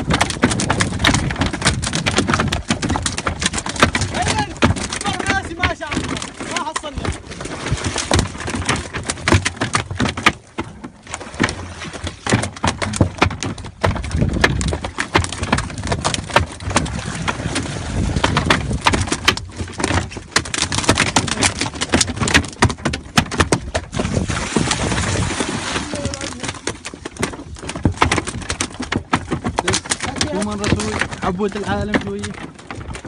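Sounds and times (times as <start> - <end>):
sharp knocks: 0.0 - 7.2, 7.8 - 17.4, 18.2 - 24.8, 25.9 - 33.0
wind noise: 0.0 - 10.3, 11.2 - 33.0.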